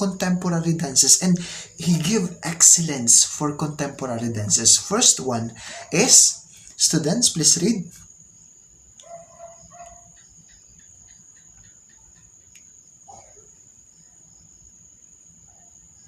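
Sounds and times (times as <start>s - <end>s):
steady high-pitched whine: 0.0s - 9.1s.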